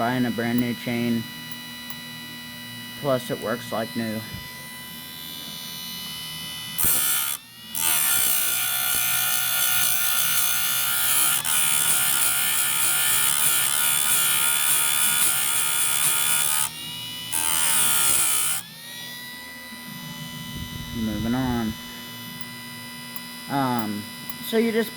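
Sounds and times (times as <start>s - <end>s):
motor whine: 0.0s - 24.9s
grinding wheel grinding chain: 6.8s - 18.6s.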